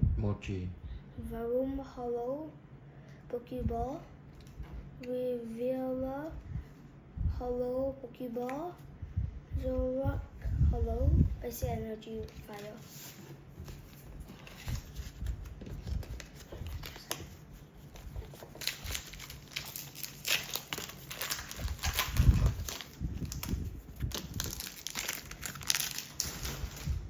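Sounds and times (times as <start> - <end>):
foil wrapper crinkling and tearing: 14.4 - 27.0.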